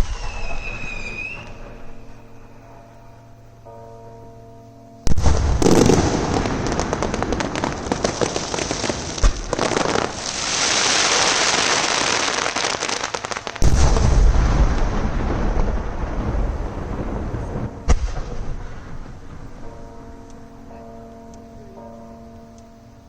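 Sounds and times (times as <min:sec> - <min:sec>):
heavy fireworks booms: 0:00.0 - 0:02.2, 0:05.0 - 0:19.7
fireworks bursting: 0:00.0 - 0:02.6, 0:05.0 - 0:19.6
fireworks crackling: 0:00.0 - 0:02.6, 0:05.1 - 0:19.7
fireworks hissing crackle: 0:00.0 - 0:02.6, 0:05.1 - 0:19.5.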